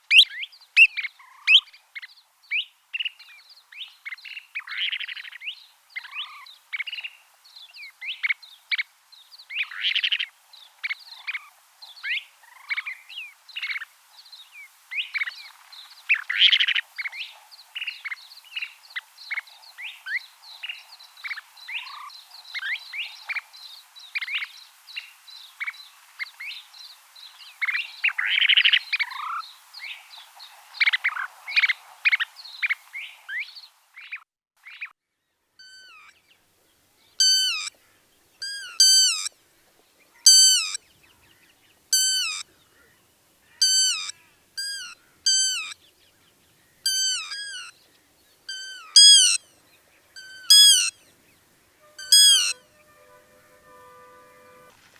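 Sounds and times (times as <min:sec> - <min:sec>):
soft hiss: 0:00.0 - 0:34.1, 0:35.9 - 0:54.9
chorus of birds and frogs: 0:00.0 - 0:35.0, 0:35.6 - 0:54.9
bird falling call: 0:37.2 - 0:37.7, 0:38.4 - 0:39.3, 0:40.3 - 0:40.8, 0:42.0 - 0:42.4, 0:43.6 - 0:45.8, 0:46.9 - 0:47.7, 0:48.5 - 0:49.4, 0:50.2 - 0:50.9, 0:52.0 - 0:52.6.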